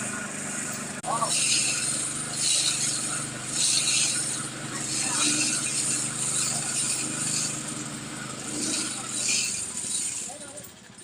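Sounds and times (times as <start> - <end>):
drilling machine engine running: 0.0 - 11.0
pulsing hiss: 0.0 - 11.0.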